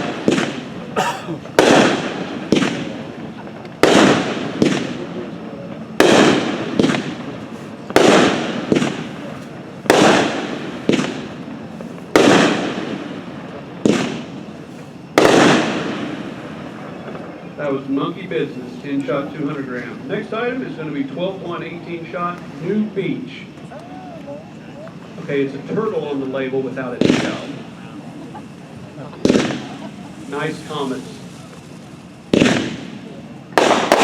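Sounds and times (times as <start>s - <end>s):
smaller firework pops with rumble: 0.0s - 0.8s, 1.5s - 17.4s, 26.9s - 27.7s, 29.2s - 30.0s, 30.7s - 34.0s
firework bangs: 0.0s - 17.5s, 26.6s - 34.0s.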